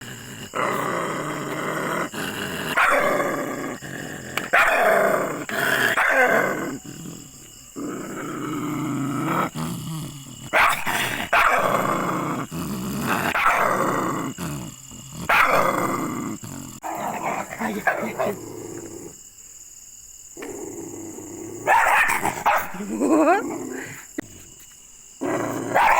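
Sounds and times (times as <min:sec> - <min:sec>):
dogs growling: 0:00.0 - 0:19.2, 0:20.4 - 0:24.5, 0:25.2 - 0:25.9
dogs barking: 0:02.6 - 0:06.8, 0:10.5 - 0:14.0, 0:15.2 - 0:16.1, 0:21.6 - 0:23.0, 0:25.6 - 0:25.9.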